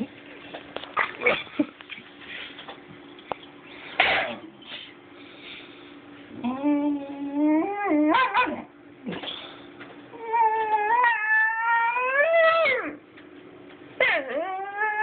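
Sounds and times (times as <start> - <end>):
puppy whining calls: 6.3 - 9.4, 10.1 - 13.0, 14.0 - 15.0.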